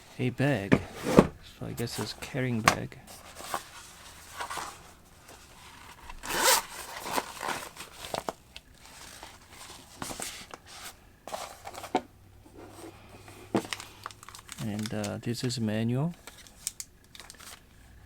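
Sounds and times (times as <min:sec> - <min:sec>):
bag rustling and clicks: 0:00.7 - 0:15.1
zipper being pulled: 0:06.1 - 0:07.7.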